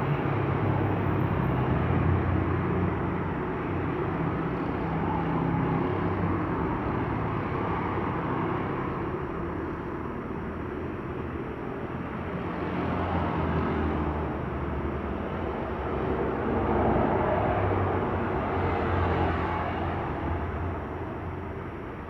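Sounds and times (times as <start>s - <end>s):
airliner engines rumbling: 15.0s - 22.0s.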